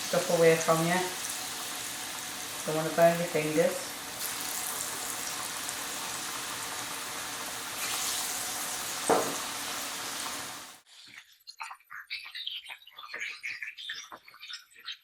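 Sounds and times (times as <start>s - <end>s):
chicken wings sizzling in oil: 0.0s - 15.0s.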